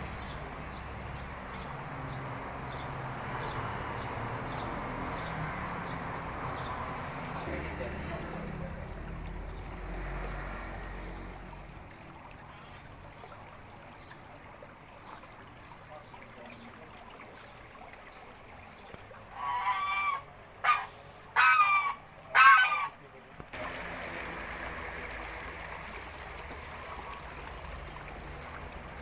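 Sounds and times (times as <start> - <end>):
fowl honking: 19.3 - 23.0.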